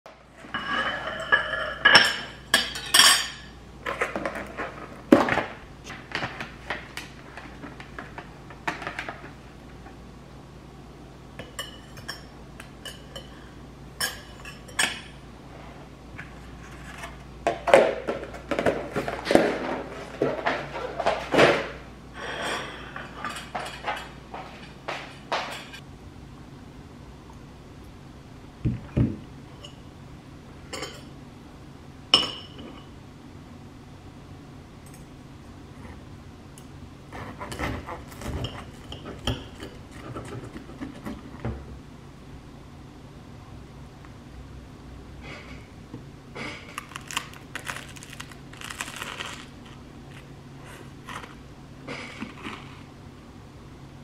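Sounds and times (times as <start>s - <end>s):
dishes and cutlery clinking: 0.5s - 3.5s, 11.4s - 15.2s, 22.3s - 25.8s.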